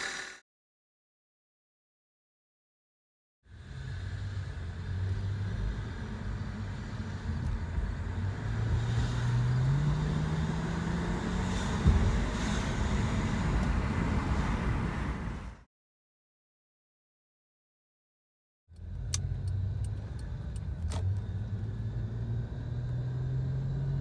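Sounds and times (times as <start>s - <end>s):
thump: 11.8s - 12.1s
car engine whining: 18.8s - 24.0s.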